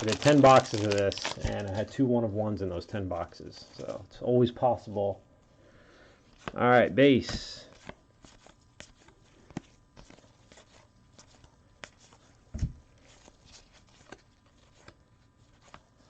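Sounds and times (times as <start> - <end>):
trading cards flipped by hand: 7.2 - 16.0.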